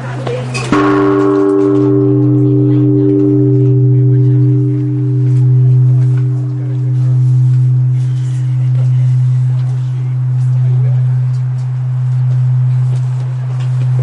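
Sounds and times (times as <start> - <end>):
deep hum: 0.7 - 14.0
temple bell ringing: 0.7 - 14.0.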